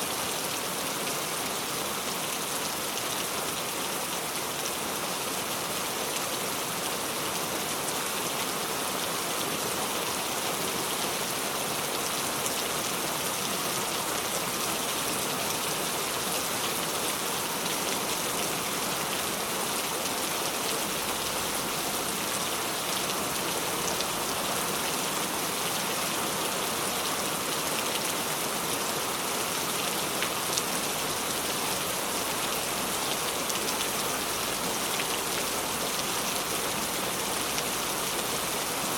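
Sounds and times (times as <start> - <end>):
rain pattering: 11.8 - 38.9.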